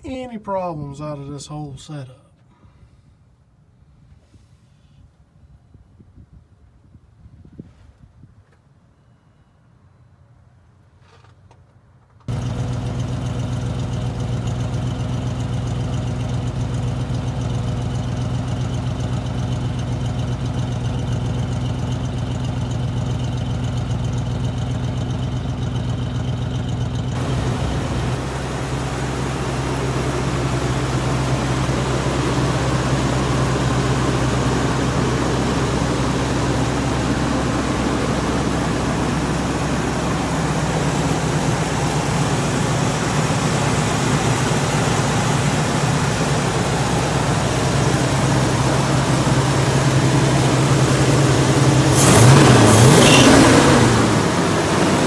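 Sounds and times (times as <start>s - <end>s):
pickup engine idling: 12.3s - 55.0s.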